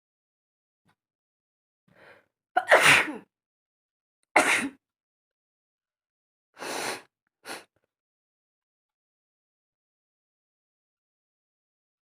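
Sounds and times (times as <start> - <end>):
woman sneezing: 2.6 - 3.2.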